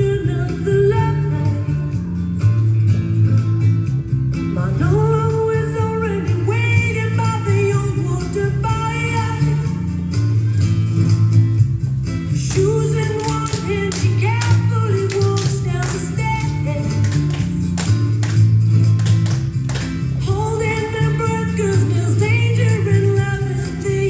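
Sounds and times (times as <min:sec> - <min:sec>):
person singing: 0:00.0 - 0:01.9, 0:04.6 - 0:09.8, 0:12.4 - 0:17.5, 0:20.2 - 0:24.0
bass line: 0:00.0 - 0:24.0
guitar: 0:00.0 - 0:24.0
sharp percussion: 0:09.7 - 0:24.0.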